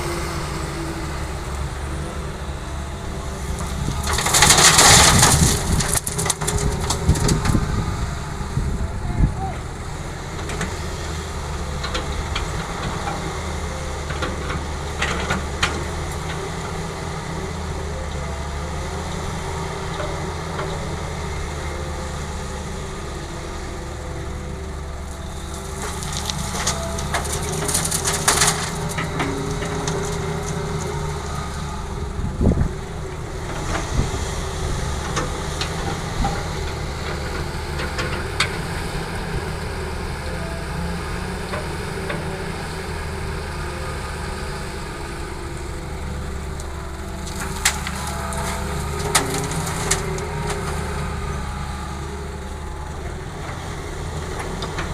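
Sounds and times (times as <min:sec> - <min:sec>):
diesel machinery running: 0:00.0 - 0:54.9
rock and earth scraping and clattering: 0:02.7 - 0:08.8, 0:25.2 - 0:39.9, 0:46.4 - 0:54.9.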